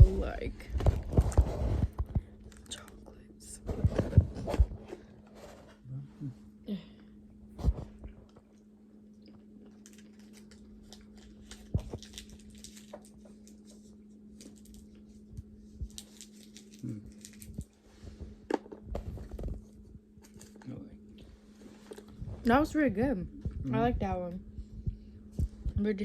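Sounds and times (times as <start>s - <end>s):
person chewing candy: 8.0s - 17.8s.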